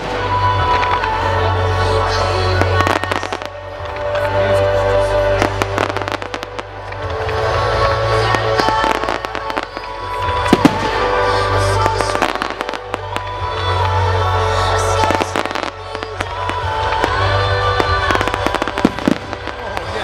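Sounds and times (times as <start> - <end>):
fireworks bangs and crackles: 0.0 - 20.0
music with sustained notes: 0.0 - 20.0.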